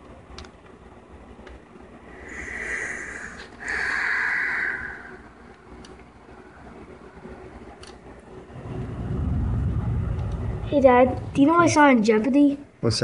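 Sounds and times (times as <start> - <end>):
person breathing close to microphone: 2.1 - 5.5.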